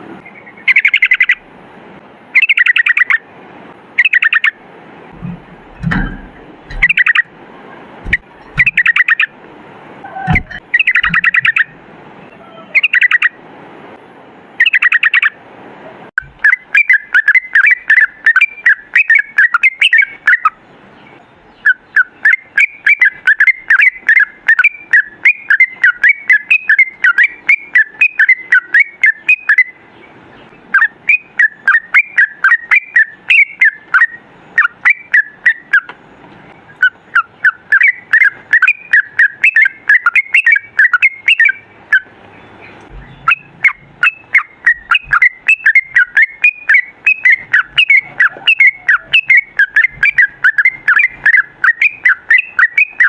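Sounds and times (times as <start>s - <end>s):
bulbul singing: 0.2s - 1.5s, 2.4s - 3.3s, 3.9s - 9.4s, 10.0s - 13.4s, 14.6s - 15.4s, 16.2s - 53.0s
low thumps: 5.1s - 7.2s, 8.0s - 8.9s, 10.3s - 11.6s.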